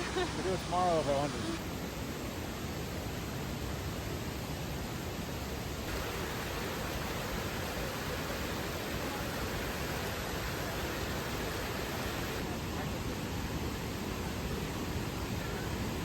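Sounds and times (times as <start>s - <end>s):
waterfall roar: 0.0s - 16.0s.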